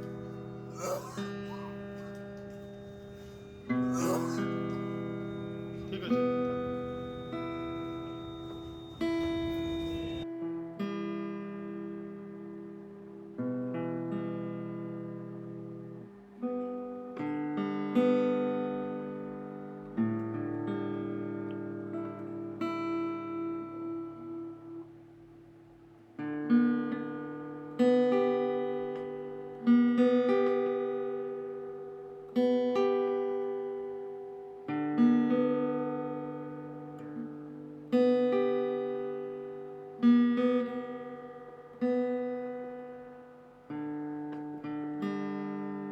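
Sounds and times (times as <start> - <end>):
acoustic guitar plucking chords: 0.0 - 10.2.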